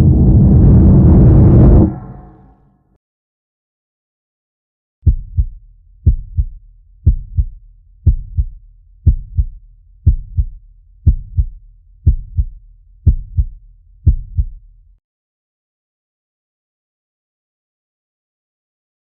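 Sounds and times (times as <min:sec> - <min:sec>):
heartbeat thumps: 0:05.0 - 0:14.6.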